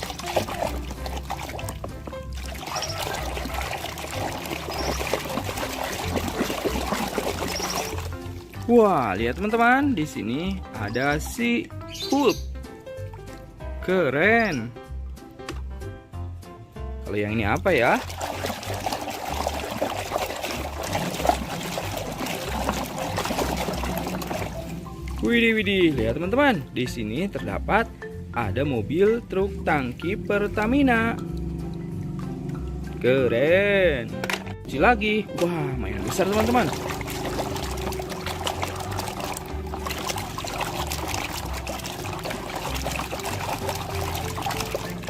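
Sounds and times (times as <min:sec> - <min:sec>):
water pouring and trickling: 0:00.0 - 0:11.5, 0:17.5 - 0:26.3, 0:35.4 - 0:45.0.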